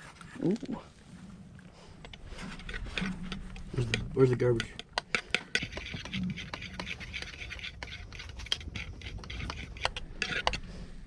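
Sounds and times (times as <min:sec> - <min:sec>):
dishes and utensils scraping: 0:05.1 - 0:10.6.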